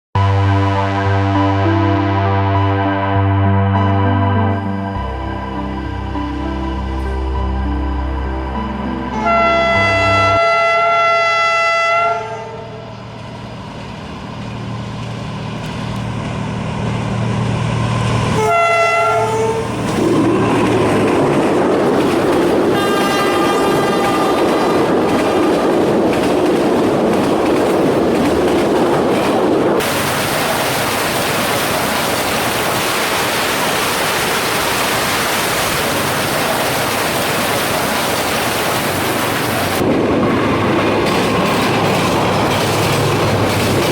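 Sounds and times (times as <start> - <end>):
locomotive horn: 0.2 - 8.0, 9.0 - 13.0, 18.3 - 21.4, 22.5 - 25.8
train wheels clattering on rails: 19.8 - 43.9
heavy rain hiss: 29.8 - 39.8.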